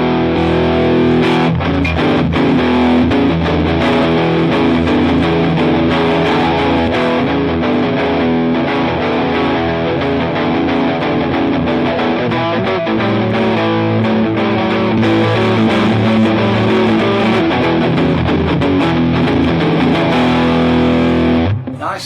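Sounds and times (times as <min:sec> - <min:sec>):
overdriven electric guitar chords: 0:00.0 - 0:21.9.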